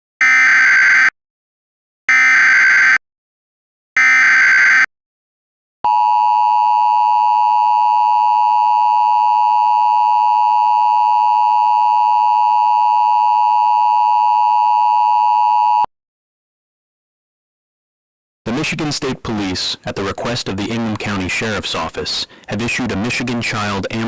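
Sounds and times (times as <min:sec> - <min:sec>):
two-tone alarm: 0:00.2 - 0:01.2, 0:02.1 - 0:03.0, 0:04.0 - 0:04.9, 0:05.9 - 0:15.9.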